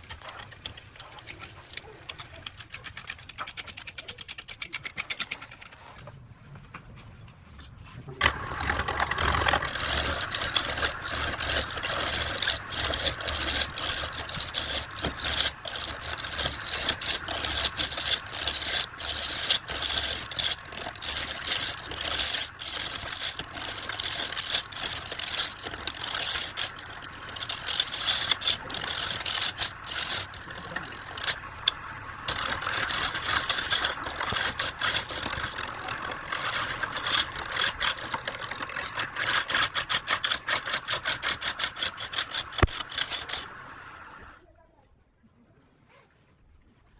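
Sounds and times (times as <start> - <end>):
turning tool scraping wood: 0.0 - 6.0, 8.2 - 43.6
lathe motor hum: 8.2 - 44.3.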